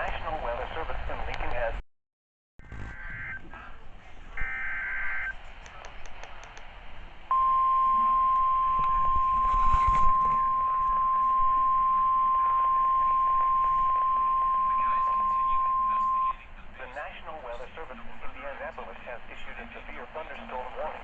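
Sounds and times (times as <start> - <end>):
steady warning alarm tone: 2.6 - 3.4, 4.4 - 5.3, 7.3 - 16.3
screeching digital header tones: 7.3 - 16.3.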